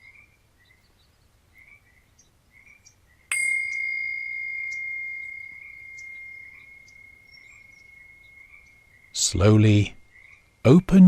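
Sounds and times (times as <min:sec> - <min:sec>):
faint bird chirps: 0:00.0 - 0:10.7
meditation bell ringing: 0:03.3 - 0:09.6.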